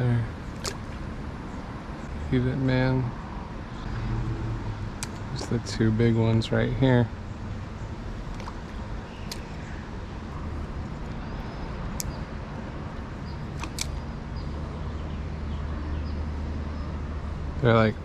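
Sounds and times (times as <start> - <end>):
low outdoor rumble: 0.0 - 18.0
short sharp clicks: 13.6 - 14.0.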